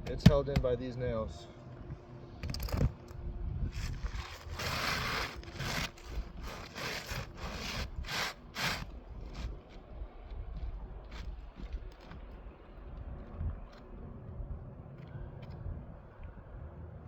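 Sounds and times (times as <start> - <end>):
scraping on asphalt roof shingles: 3.8 - 9.9.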